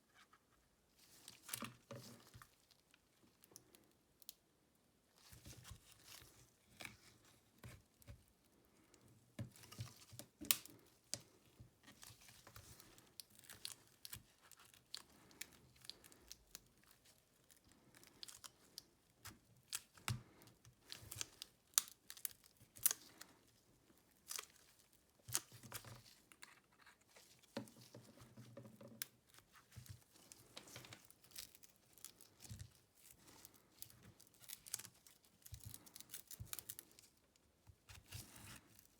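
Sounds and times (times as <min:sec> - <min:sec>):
small clicks and scrapes: 0:00.0 - 0:04.4, 0:05.2 - 0:23.6, 0:24.2 - 0:38.9
tearing and crinkling: 0:09.6 - 0:23.5, 0:24.1 - 0:27.9, 0:29.2 - 0:37.2.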